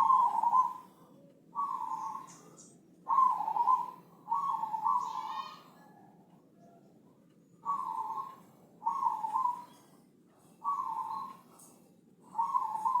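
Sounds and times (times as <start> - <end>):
dove cooing: 0.0 - 1.0, 1.6 - 5.9, 7.6 - 9.8, 10.6 - 11.5, 12.3 - 13.0.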